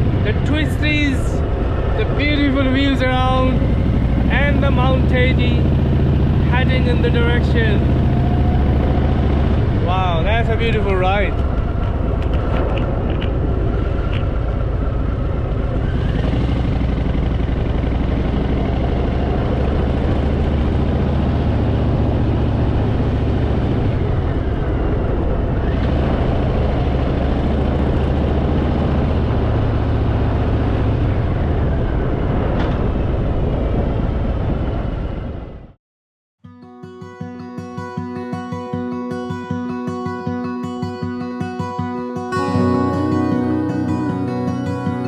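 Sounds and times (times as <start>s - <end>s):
wind rush: 0.0s - 4.7s, 7.6s - 17.9s, 22.4s - 35.8s
motorcycle engine running: 0.0s - 32.3s.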